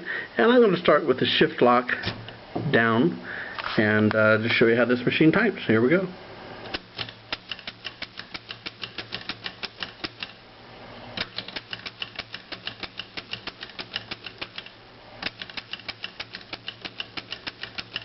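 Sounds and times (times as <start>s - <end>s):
typewriter typing: 6.7s - 10.4s, 11.2s - 18.0s.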